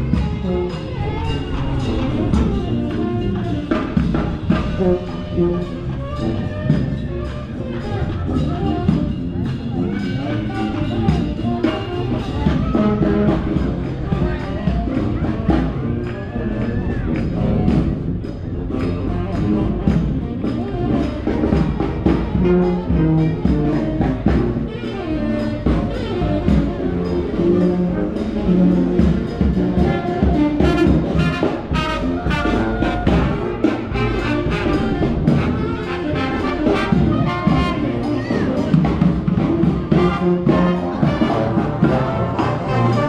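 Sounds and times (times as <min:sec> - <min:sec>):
drum beat: 0:00.0 - 0:16.1, 0:28.6 - 0:43.0
trombone: 0:00.0 - 0:43.0
trumpet: 0:00.0 - 0:43.0.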